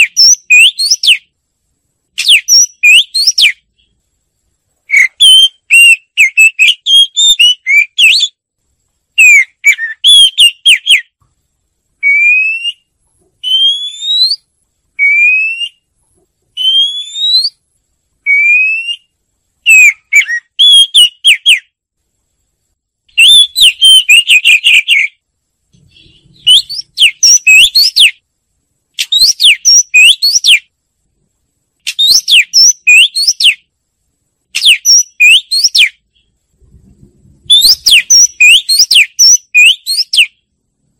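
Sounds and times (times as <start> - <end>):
bird singing whistled phrases: 0.0 - 1.3, 2.2 - 3.9, 4.9 - 8.4, 9.2 - 11.1, 12.0 - 15.9, 16.6 - 17.6, 18.2 - 19.1, 19.7 - 21.7, 23.1 - 25.2, 25.9 - 28.2, 29.0 - 30.7, 31.9 - 33.7, 34.6 - 36.3, 37.5 - 40.4
single rising whistles: 12.3 - 14.5, 16.6 - 17.6.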